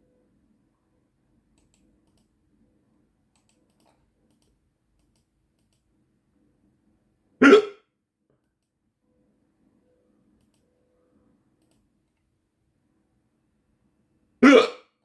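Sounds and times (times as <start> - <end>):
faint short clicks: 1.6 - 2.3, 3.3 - 5.9, 11.6 - 11.9.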